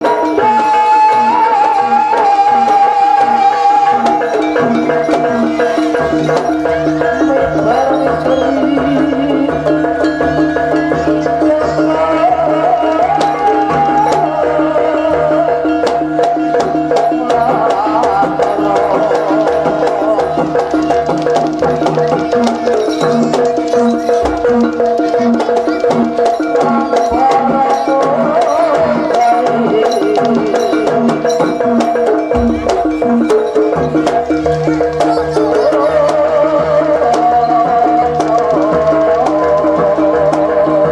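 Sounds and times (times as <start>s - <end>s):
percussion ensemble with drums: 0.0s - 40.9s
wavering melody line: 2.8s - 12.0s, 12.8s - 37.0s
metal and wooden strokes: 4.0s - 9.4s.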